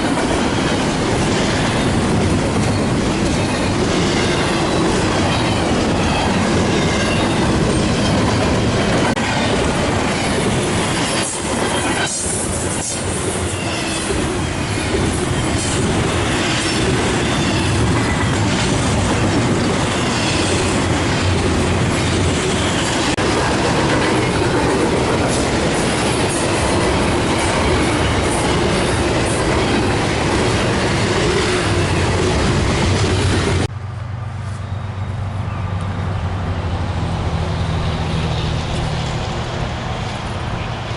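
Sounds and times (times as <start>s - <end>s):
wheels squealing against rails: 0.0s - 21.2s, 34.4s - 40.9s
railroad cars rolling past: 0.0s - 40.9s.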